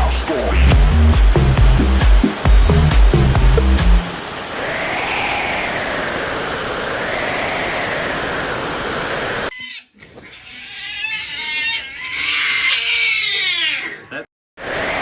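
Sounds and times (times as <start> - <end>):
rain: 0.0 - 9.5
howling wind: 4.2 - 9.5, 14.6 - 15.0
drawn-out animal cry: 9.5 - 14.2.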